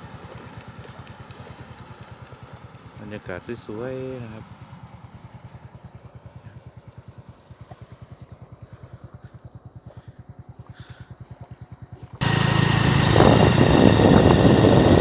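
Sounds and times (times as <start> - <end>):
motorcycle engine idling: 0.0 - 8.0, 8.8 - 15.0.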